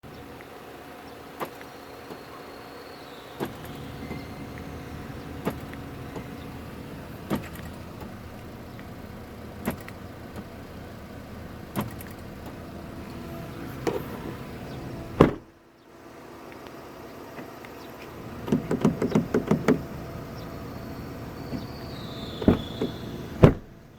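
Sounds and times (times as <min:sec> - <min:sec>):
door lock actuators clunking: 0:13.8 - 0:15.6, 0:18.4 - 0:20.5, 0:21.3 - 0:23.9.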